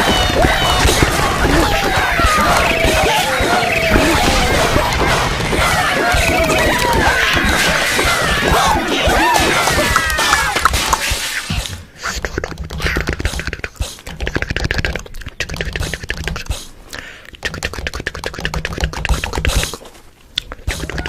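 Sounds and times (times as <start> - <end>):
low thumps: 0.0 - 8.9.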